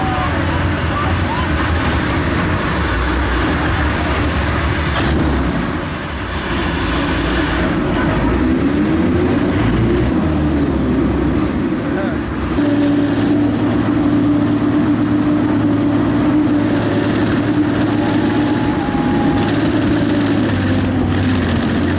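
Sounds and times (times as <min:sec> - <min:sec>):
tracked vehicle engine drone: 0:00.0 - 0:21.9.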